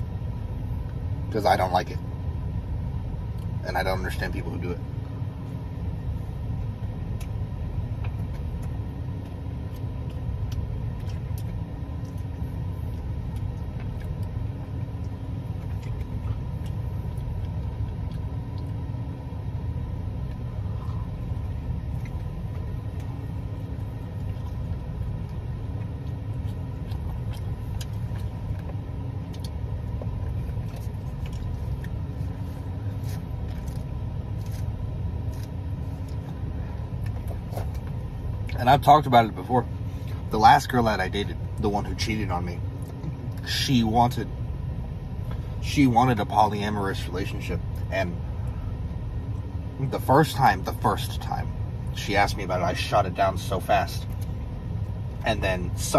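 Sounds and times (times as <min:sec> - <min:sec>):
steady low rumble: 0:00.0 - 0:55.9
person chewing a sandwich: 0:05.0 - 0:38.6.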